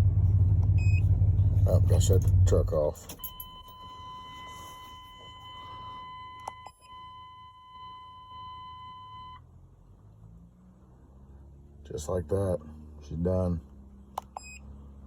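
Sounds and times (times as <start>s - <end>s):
steady electronic beep tone: 3.2s - 9.4s.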